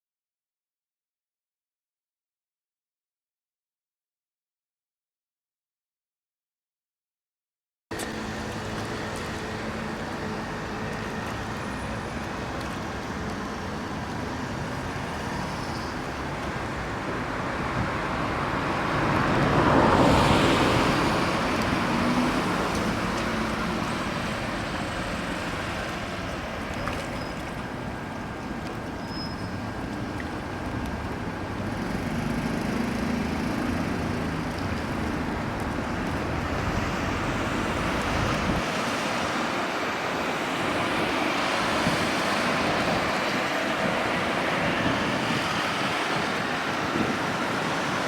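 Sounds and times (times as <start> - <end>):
steady traffic noise: 7.9 - 48.0.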